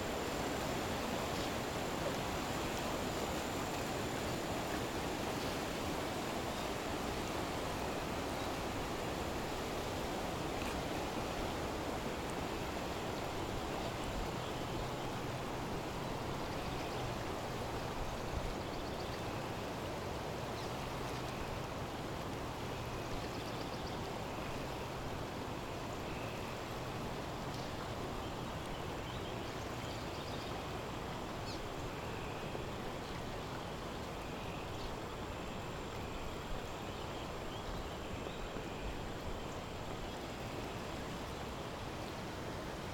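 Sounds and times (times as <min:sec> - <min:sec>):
river water rushing: 0:00.0 - 0:18.6, 0:30.5 - 0:42.9.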